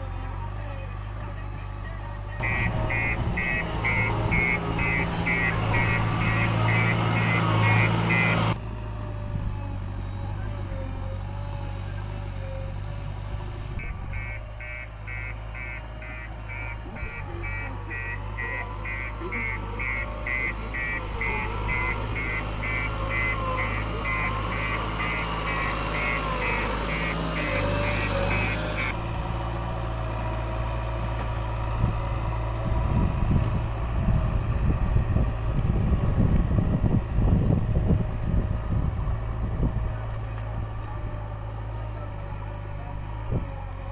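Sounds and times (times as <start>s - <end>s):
diesel engine humming: 0.0s - 43.9s
reversing alarm beeping: 2.4s - 8.6s, 13.8s - 29.0s.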